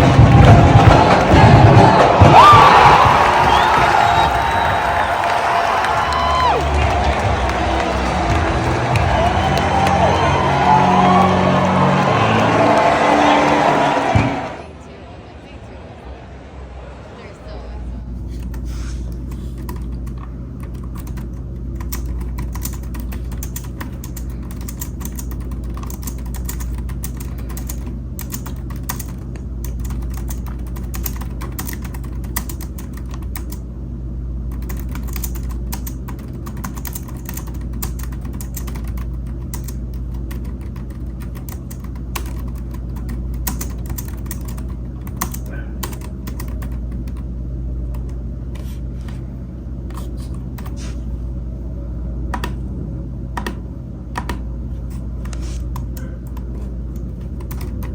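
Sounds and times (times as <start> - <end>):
steady low hum: 0.0 - 57.9
typing on keyboard: 18.4 - 33.6, 34.5 - 47.3, 55.8 - 57.9.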